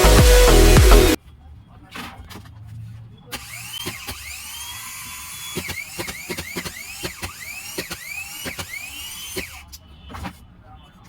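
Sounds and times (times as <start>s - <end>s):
motor click: 3.4s - 9.7s
small electric motor whining: 3.4s - 9.7s.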